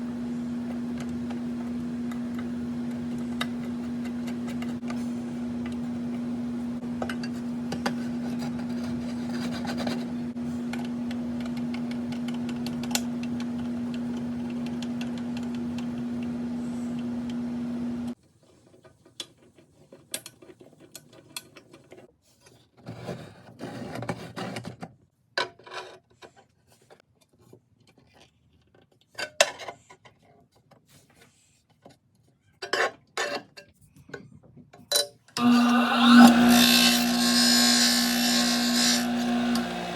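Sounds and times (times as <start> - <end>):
disc sander motor humming: 0.0 - 18.2, 35.4 - 39.9
rubbing and handling noises: 7.3 - 10.7, 18.2 - 25.0.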